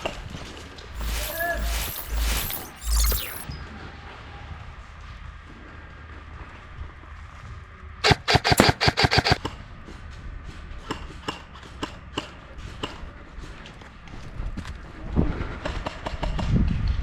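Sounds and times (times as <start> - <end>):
airsoft gun firing: 8.0 - 9.4.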